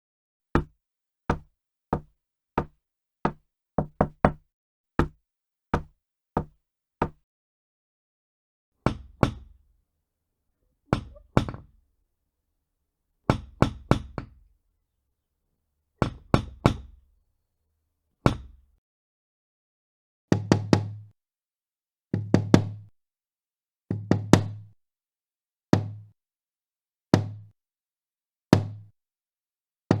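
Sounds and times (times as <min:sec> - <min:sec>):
knocking on doors: 0:01.3 - 0:04.4, 0:05.8 - 0:07.2.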